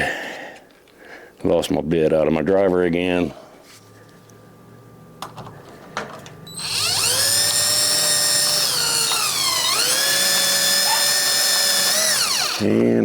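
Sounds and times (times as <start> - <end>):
cordless drill whining: 6.5 - 12.7.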